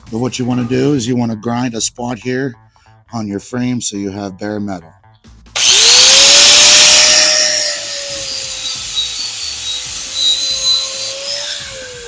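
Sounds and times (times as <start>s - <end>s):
grinder grinding metal: 5.6s - 12.0s.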